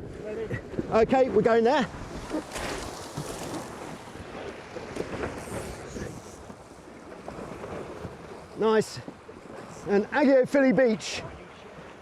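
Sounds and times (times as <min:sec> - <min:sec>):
wind on microphone: 0:00.0 - 0:08.4
water rushing past hulls: 0:00.0 - 0:12.0.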